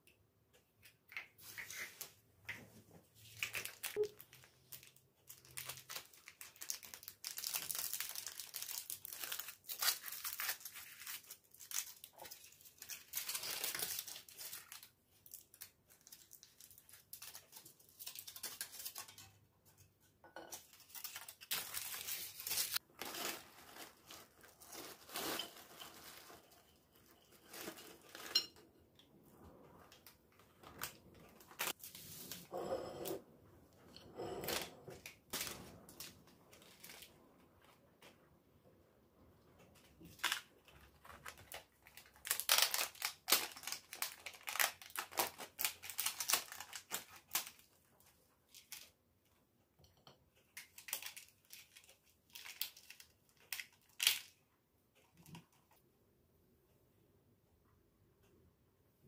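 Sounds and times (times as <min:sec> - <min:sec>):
crinkly wrapping rustling and tearing: 0:03.1 - 0:19.9, 0:20.5 - 0:29.1, 0:29.8 - 0:32.5, 0:34.4 - 0:38.2, 0:39.6 - 0:49.0, 0:50.3 - 0:55.8.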